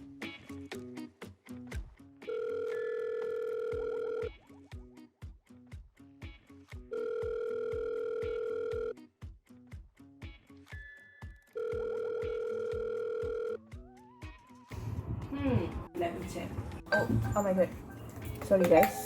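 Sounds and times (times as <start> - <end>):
telephone ringing tone: 2.2 - 4.4, 6.9 - 8.9, 11.6 - 13.6
instrumental music with beat: 12.7 - 16.0.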